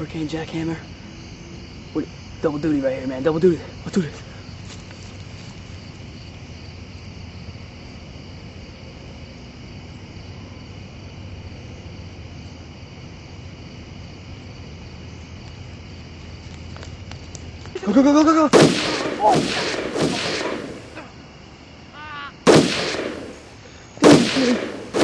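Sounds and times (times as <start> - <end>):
crickets chirping: 0.0 - 25.0.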